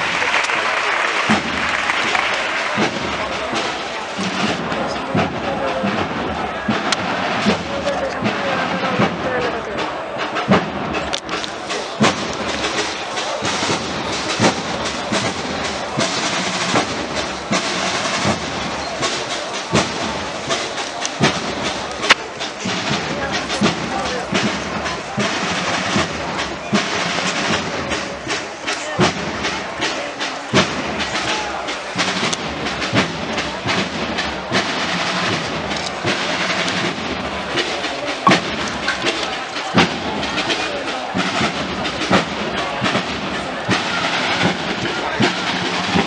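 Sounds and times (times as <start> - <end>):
crowd hubbub: 0.0 - 46.0
drum beating slow march: 0.0 - 46.0.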